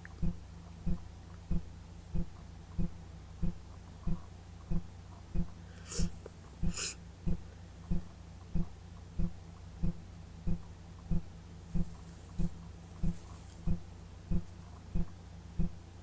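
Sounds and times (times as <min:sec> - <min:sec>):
low steady hum: 0:00.0 - 0:16.0
person sniffing: 0:05.7 - 0:07.0.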